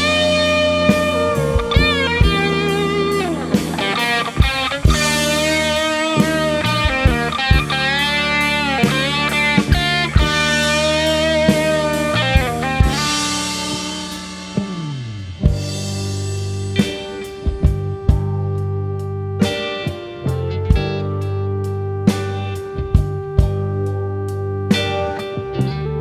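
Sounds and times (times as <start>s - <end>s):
drum hits: 0.0s - 2.9s, 3.5s - 18.3s
electric guitar lead line: 0.0s - 26.0s
keyboard chords: 0.0s - 26.0s
sustained bass: 0.0s - 26.0s.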